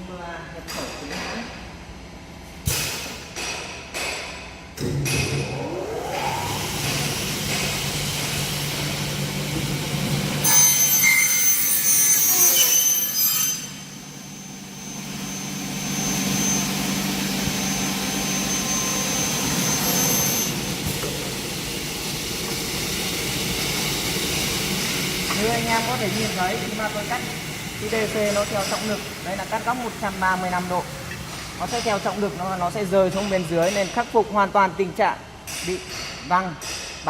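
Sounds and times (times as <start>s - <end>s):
saw motor humming: 5.6s - 30.6s
saw blade cutting aluminium: 10.4s - 20.9s.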